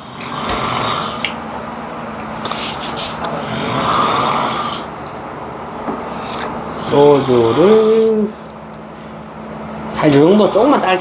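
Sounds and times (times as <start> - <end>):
person snoring: 0.0 - 1.3, 3.3 - 4.9, 6.2 - 8.3.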